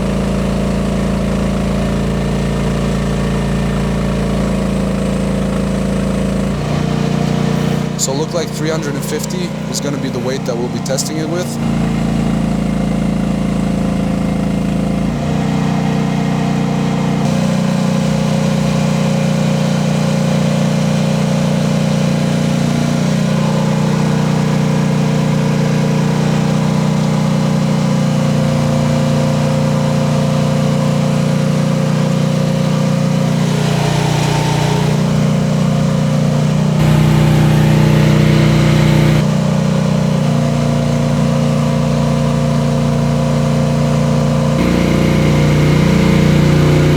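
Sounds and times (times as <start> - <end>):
mini excavator engine running: 0.0 - 26.8, 32.9 - 39.5, 44.6 - 46.9.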